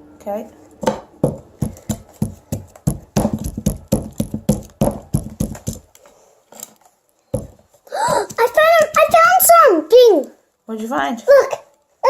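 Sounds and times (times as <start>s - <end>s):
digging tool knocking: 1.2s - 5.9s, 7.4s - 9.4s.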